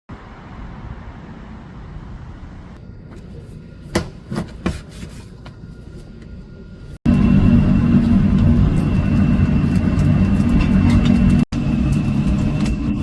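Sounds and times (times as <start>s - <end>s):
wood fire rumbling: 7.1s - 13.0s.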